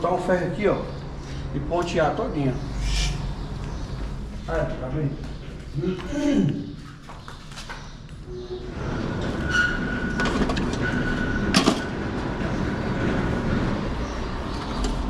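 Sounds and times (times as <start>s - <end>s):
thin metal squeal: 8.3s - 11.6s
sliding metal gate rolling: 8.3s - 15.0s.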